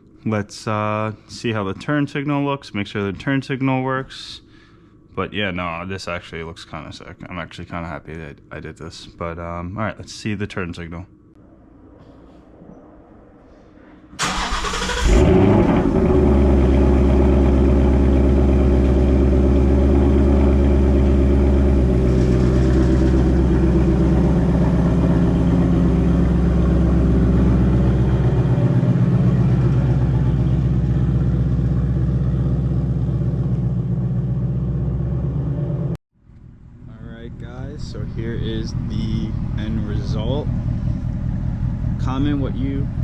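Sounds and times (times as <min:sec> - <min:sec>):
car engine starter cranking: 0:14.2 - 0:16.2
car engine idling: 0:14.2 - 0:43.0.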